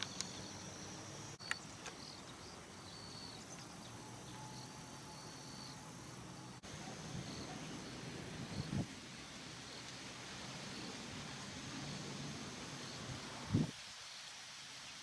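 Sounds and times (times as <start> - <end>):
faint insects chirping: 0.0 - 15.0
outdoor ambience hiss: 0.0 - 15.0.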